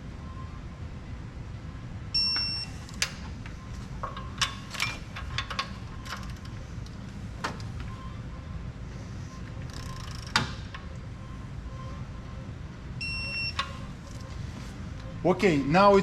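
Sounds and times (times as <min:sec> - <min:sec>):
low shop hum: 0:00.0 - 0:16.0.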